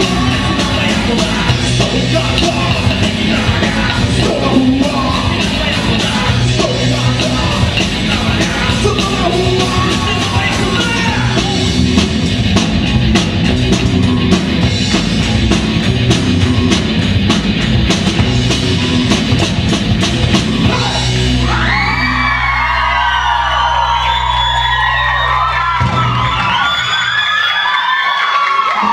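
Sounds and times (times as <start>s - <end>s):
person singing: 0.0s - 11.8s
live rock band: 0.0s - 27.3s
yells: 20.7s - 28.9s.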